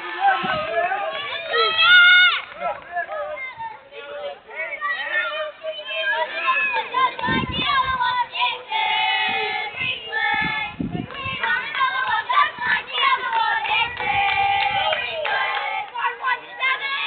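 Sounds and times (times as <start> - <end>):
children shouting phrases: 0.1 - 8.7, 14.8 - 17.0
children singing together: 6.4 - 17.0.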